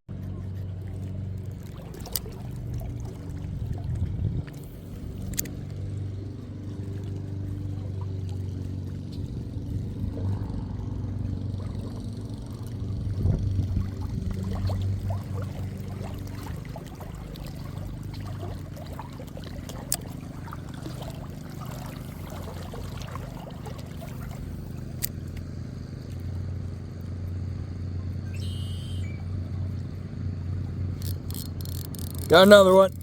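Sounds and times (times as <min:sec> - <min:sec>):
boat motor humming: 0:00.0 - 0:33.0
water trickling and lapping: 0:00.1 - 0:33.0
sharp clicks: 0:31.0 - 0:32.4.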